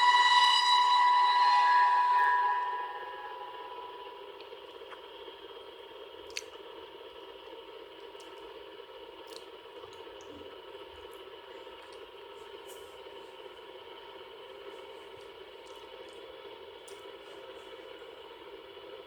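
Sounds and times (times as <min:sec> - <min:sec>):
faint held tone: 0:00.0 - 0:04.4
recording hiss: 0:00.0 - 0:19.0.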